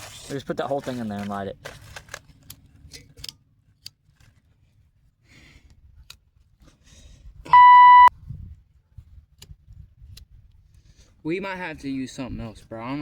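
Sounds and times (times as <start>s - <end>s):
censor bleep: 7.5s - 8.1s.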